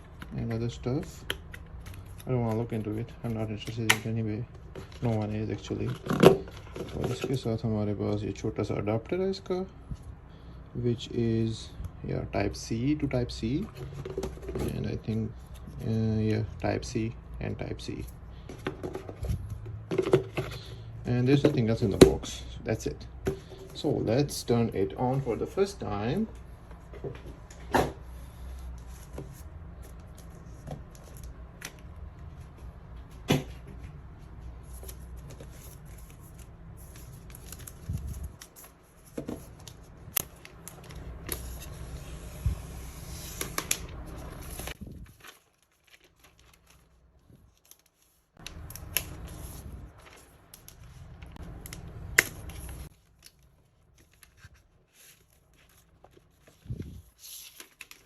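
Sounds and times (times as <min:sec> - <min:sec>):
plastic rustling and tearing: 0:43.3 - 0:58.0.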